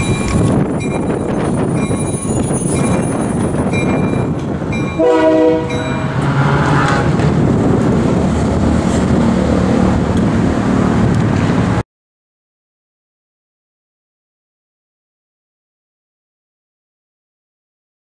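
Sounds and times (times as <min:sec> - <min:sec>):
locomotive engine rumbling: 0:00.0 - 0:11.8
locomotive horn blast: 0:05.0 - 0:07.2.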